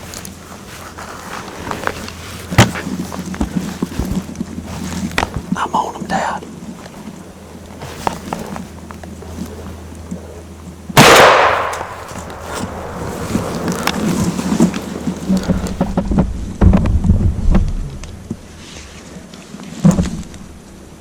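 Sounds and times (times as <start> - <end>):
rustles of movement: 0.0 - 21.0
low thumps of movement: 6.7 - 19.0
shotgun blast with echo: 11.0 - 12.2.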